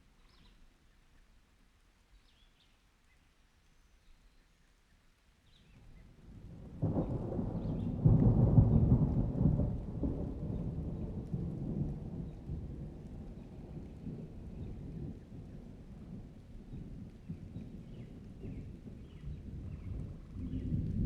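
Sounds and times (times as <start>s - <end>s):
thunder rumbling: 6.3s - 21.0s.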